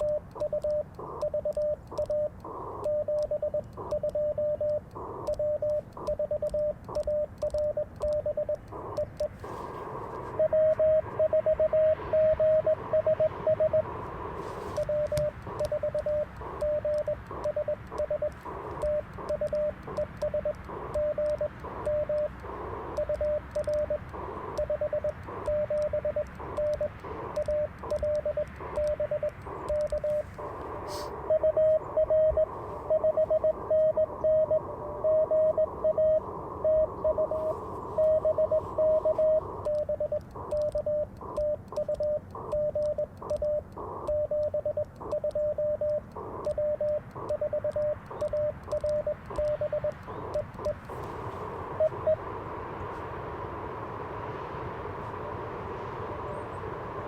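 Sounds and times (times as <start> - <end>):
click: 0.0 - 9.3, 14.8 - 30.7, 39.6 - 50.9
morse code tone: 0.0 - 52.3
radio band hiss: 0.0 - 57.0.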